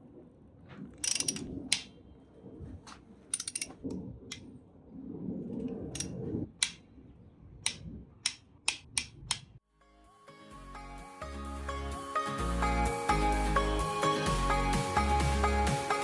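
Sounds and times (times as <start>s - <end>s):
hand ratchet clicking: 1.0s - 1.9s, 3.4s - 3.8s, 6.0s - 6.8s, 7.7s - 9.5s.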